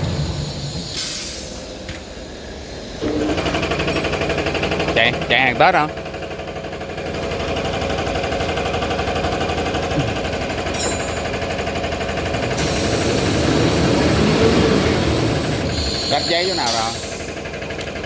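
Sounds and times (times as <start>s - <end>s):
hiss: 0.0s - 2.9s, 12.6s - 17.4s
machine mechanical clatter: 3.0s - 18.0s.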